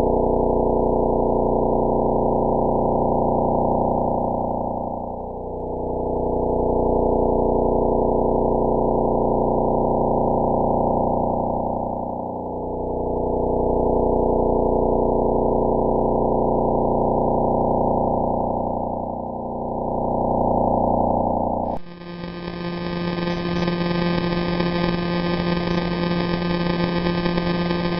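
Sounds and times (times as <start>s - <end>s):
low dense drone: 21.7s - 27.9s.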